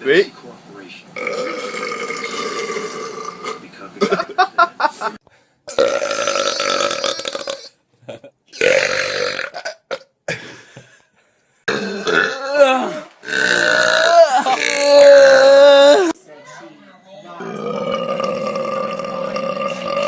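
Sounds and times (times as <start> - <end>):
person burping: 1.2 - 3.6, 5.7 - 7.8, 8.6 - 10.1, 11.7 - 16.1, 17.4 - 20.0.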